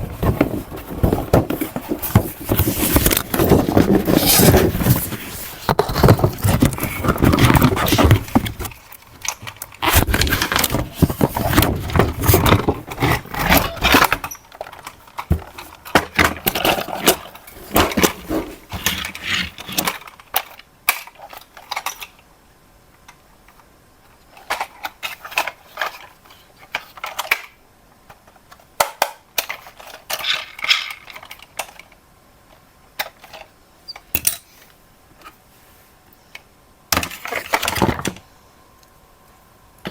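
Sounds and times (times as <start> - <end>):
packaging rustling and scraping: 0.0 - 22.1, 24.1 - 27.4, 29.5 - 31.9
plastic pieces clicking: 28.8 - 32.0.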